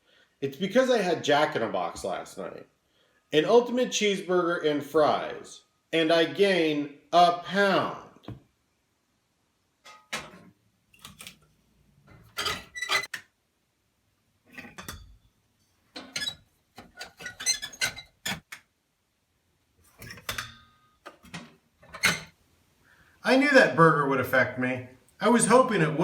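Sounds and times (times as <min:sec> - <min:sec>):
dishes and cutlery clinking: 0:09.9 - 0:11.2, 0:14.5 - 0:15.2, 0:19.9 - 0:22.3.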